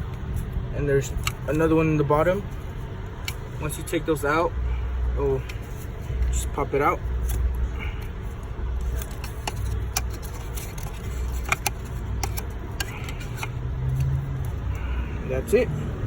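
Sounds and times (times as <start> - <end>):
steady low rumble: 0.0 - 16.0
plastic and rubber fittings rattling: 8.8 - 14.6.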